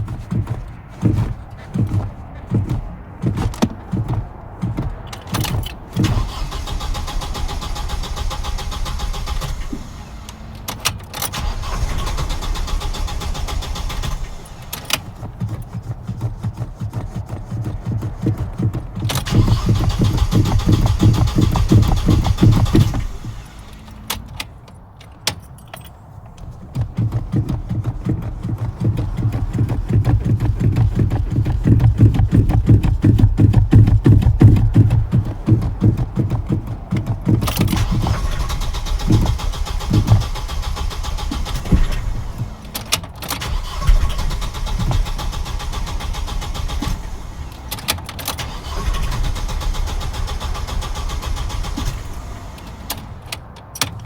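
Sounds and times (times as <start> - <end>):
car engine running unevenly: 0.0 - 53.7
starter clicks: 0.0 - 54.0
starter cranking engine: 0.0 - 54.0.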